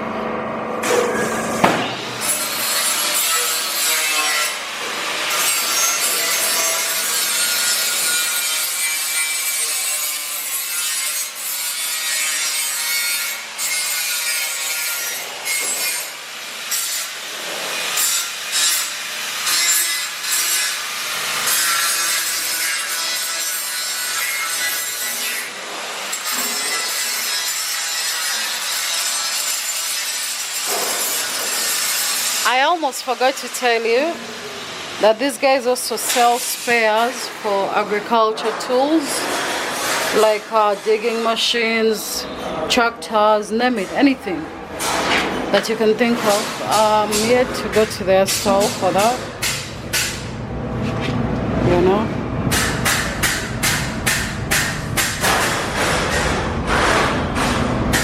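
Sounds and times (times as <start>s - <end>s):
metal cutting rasp: 2.0s - 32.5s.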